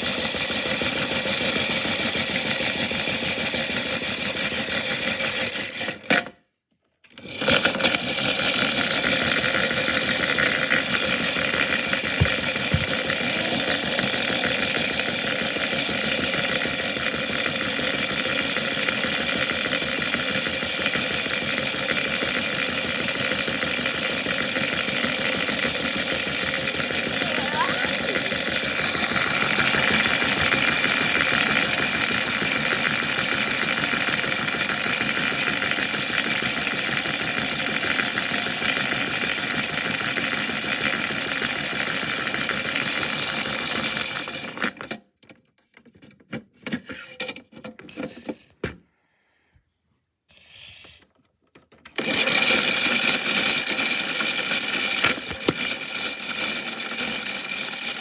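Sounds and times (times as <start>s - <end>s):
washing machine running: 7.4s - 17.0s, 23.3s - 44.0s.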